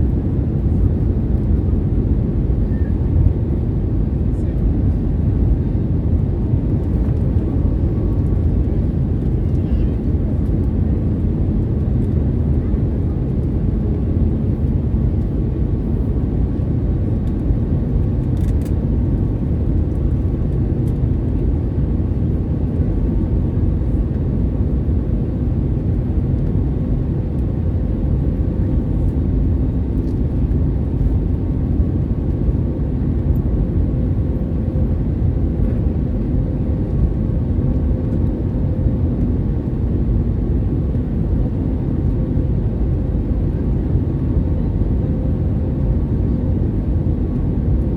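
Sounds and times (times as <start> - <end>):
airplane cabin airflow rush: 0.0 - 47.9.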